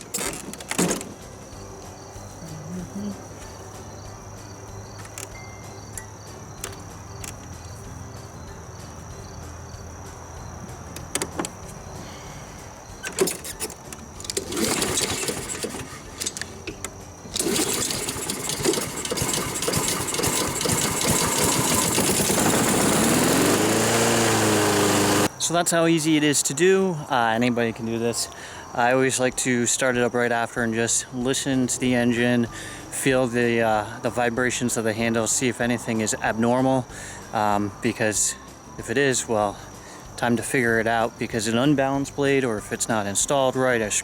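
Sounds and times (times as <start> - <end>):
lawn mower engine cranking: 0.0 - 1.2, 13.0 - 25.3
lawn mower engine running: 13.0 - 25.3.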